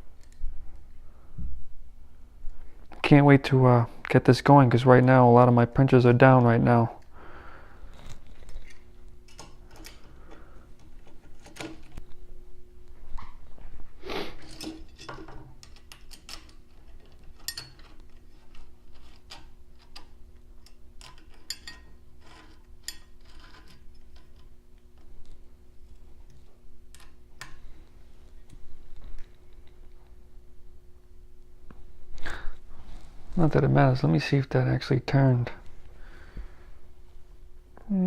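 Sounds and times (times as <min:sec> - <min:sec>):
faint steady hum: 0:00.0 - 0:38.0.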